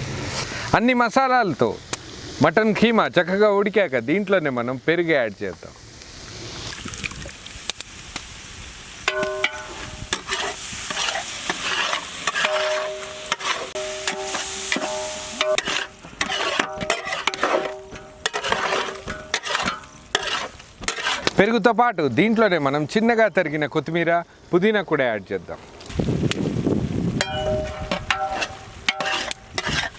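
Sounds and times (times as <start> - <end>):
meat sizzling in a pot: 0.0 - 21.4, 25.7 - 29.9
ladle scraping a pot: 9.1 - 21.4, 27.2 - 29.9.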